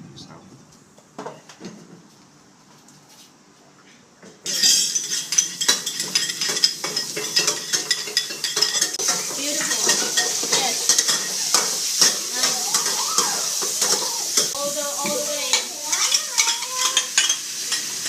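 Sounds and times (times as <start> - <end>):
metal spatula scraping a pan: 4.5 - 18.0
noodles sizzling in a pan: 4.5 - 18.0.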